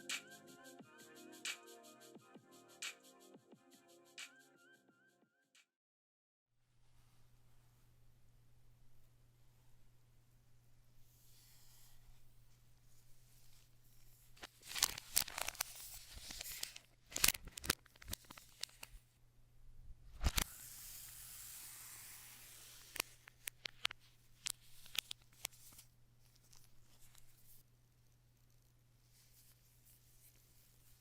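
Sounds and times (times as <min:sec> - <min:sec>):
packaging tearing and rustling: 0:14.5 - 0:18.9
steady hiss: 0:20.4 - 0:23.2.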